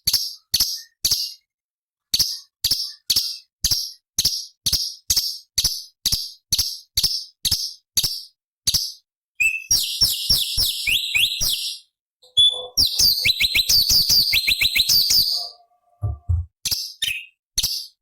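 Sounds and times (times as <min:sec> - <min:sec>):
bird harsh chips: 0:12.2 - 0:15.8
bird falling whistled notes: 0:12.3 - 0:16.4.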